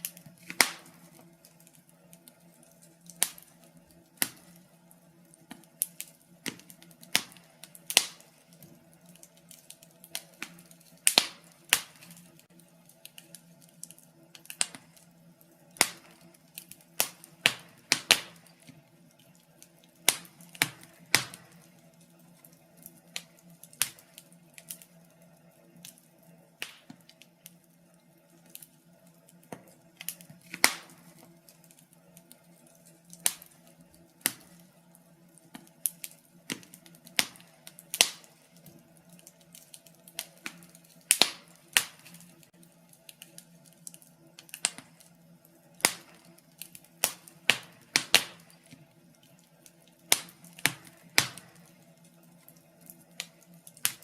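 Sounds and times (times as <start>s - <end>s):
faint steady hum: 0.0s - 54.0s
wood fire crackling and popping: 0.0s - 54.0s.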